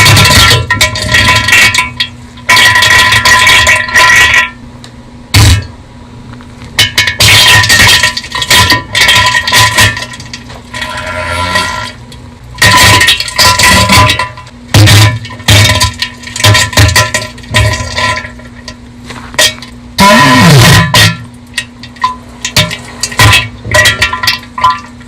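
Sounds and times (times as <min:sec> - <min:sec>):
distorted spluttering bursts: 0:20.0 - 0:21.3.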